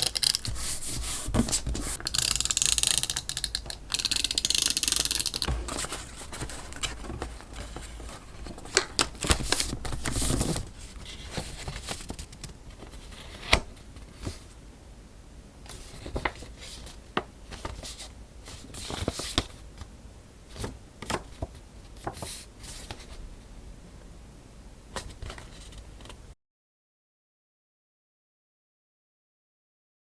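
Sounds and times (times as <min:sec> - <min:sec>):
paper rustling and sliding: 0:00.0 - 0:14.6, 0:15.7 - 0:19.6, 0:20.5 - 0:23.2.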